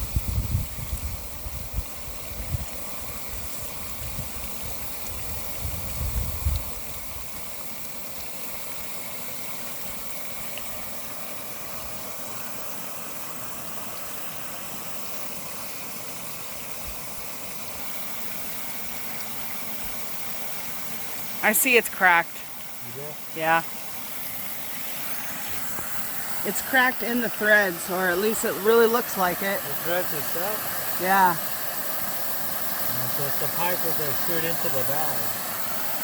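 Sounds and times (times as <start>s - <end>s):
wind buffeting microphone: 0.0s - 2.7s, 5.3s - 6.9s
water spraying from a pipe: 0.0s - 36.0s.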